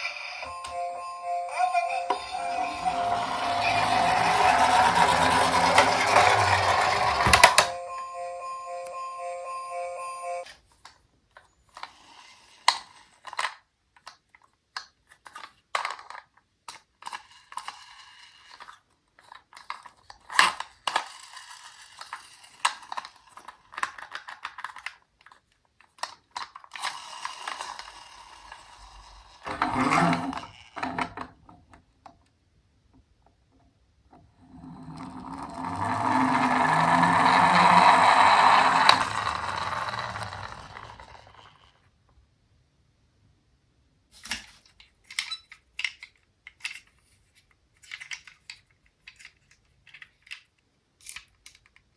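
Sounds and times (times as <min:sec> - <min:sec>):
toy car wheels whirring: 0:00.0 - 0:10.5, 0:11.7 - 0:13.7, 0:17.0 - 0:25.4, 0:26.0 - 0:31.2, 0:34.4 - 0:41.8
toy cars clicking and rattling: 0:01.6 - 0:07.7, 0:11.7 - 0:31.8, 0:34.6 - 0:41.8, 0:44.3 - 0:51.9.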